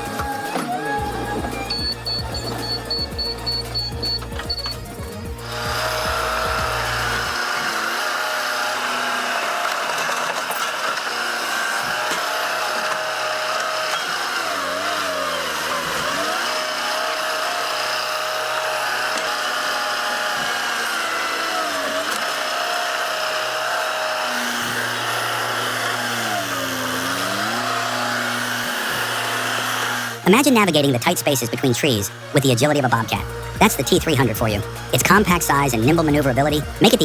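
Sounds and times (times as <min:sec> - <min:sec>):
machine engine running under load: 0:02.6 - 0:30.2.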